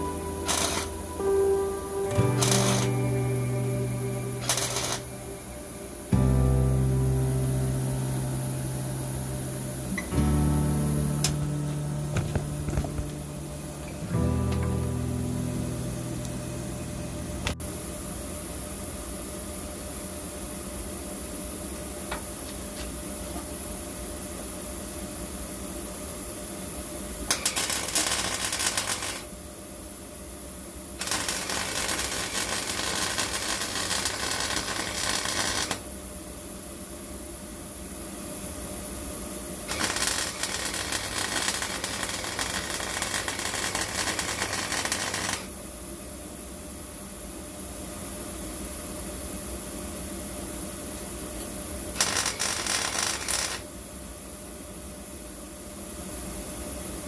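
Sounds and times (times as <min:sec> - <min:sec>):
welding arc crackling and buzzing: 0:00.0 - 0:01.0, 0:02.2 - 0:03.2, 0:04.2 - 0:06.3, 0:07.4 - 0:14.2, 0:27.3 - 0:29.3, 0:31.0 - 0:35.9, 0:39.7 - 0:45.6, 0:52.0 - 0:53.7
steady background hum: 0:00.0 - 0:57.0.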